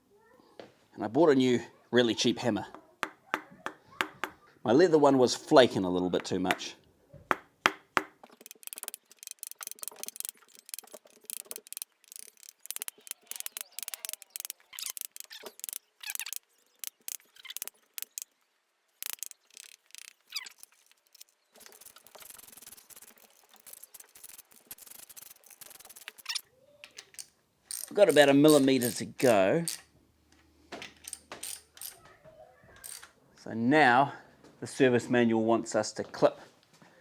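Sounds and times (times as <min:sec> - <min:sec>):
hand ratchet clicking: 0:08.3 - 0:18.3, 0:19.0 - 0:26.4, 0:27.2 - 0:29.8, 0:31.0 - 0:32.0, 0:32.8 - 0:33.1
short squeaks: 0:08.3 - 0:18.3, 0:19.0 - 0:26.4.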